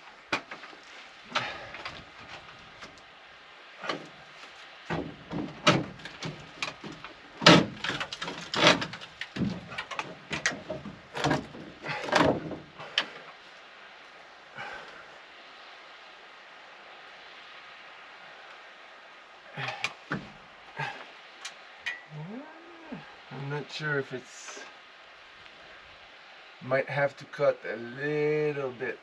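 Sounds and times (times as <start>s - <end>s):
wood scraping: 3.8s - 13.4s
wooden knocks and thuds: 4.9s - 12.8s, 19.8s - 20.4s.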